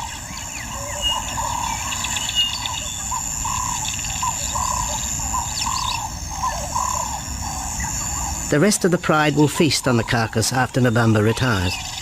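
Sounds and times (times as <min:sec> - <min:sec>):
steady high whine: 0:00.0 - 0:12.0.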